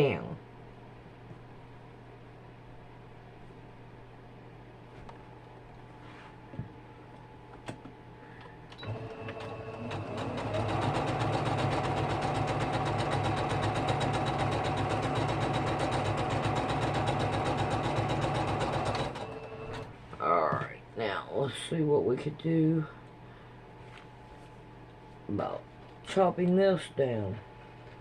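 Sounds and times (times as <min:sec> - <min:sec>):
electric sewing machine stitching: 0:08.8 - 0:19.9.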